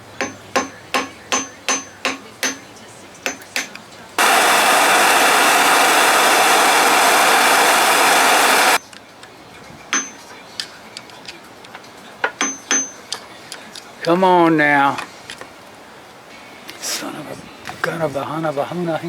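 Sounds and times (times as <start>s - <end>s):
hammer tapping metal: 0.2s - 2.7s, 3.3s - 3.8s, 12.3s - 13.0s
loud steady hiss: 4.2s - 8.8s.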